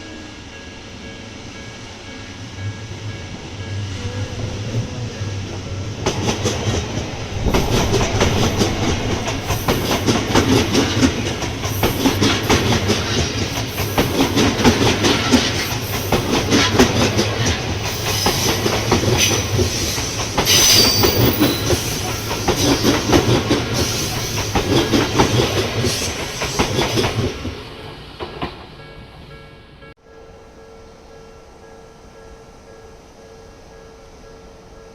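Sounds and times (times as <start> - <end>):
train wheels clattering over rail joints: 6.0 - 27.6
high wheel squeal: 17.9 - 24.8.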